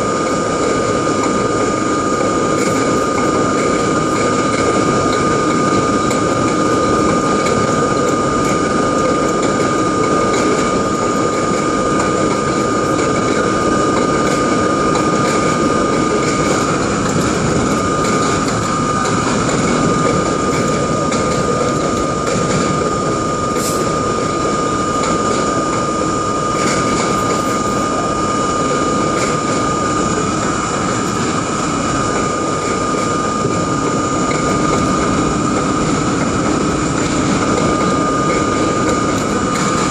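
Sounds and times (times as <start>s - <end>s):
high whine: 0.0s - 39.9s
subway train wheels rumbling: 0.0s - 39.9s.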